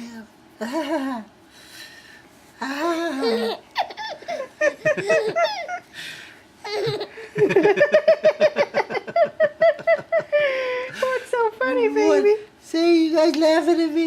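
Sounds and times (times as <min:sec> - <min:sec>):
baby laughing: 0:03.0 - 0:05.9, 0:06.6 - 0:10.2.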